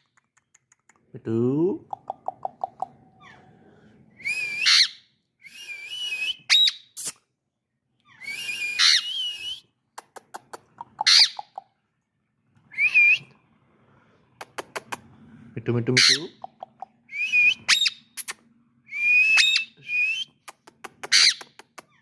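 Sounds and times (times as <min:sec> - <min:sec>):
parrot squawks and whistles: 0:04.2 - 0:07.2, 0:08.1 - 0:09.6, 0:19.0 - 0:20.2.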